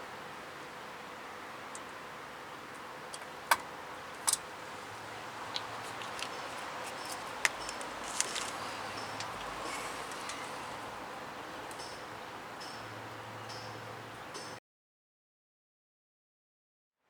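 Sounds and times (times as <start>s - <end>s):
tools and brake parts clicking: 5.5s - 10.6s.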